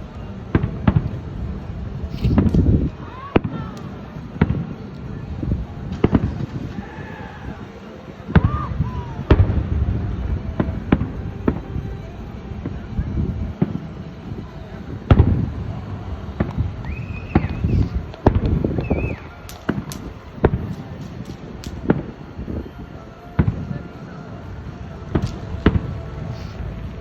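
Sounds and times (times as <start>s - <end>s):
fireworks bangs with rumble: 0.5s - 1.6s, 5.5s - 6.7s, 8.3s - 14.4s, 15.0s - 22.2s, 23.3s - 23.8s, 25.1s - 26.3s.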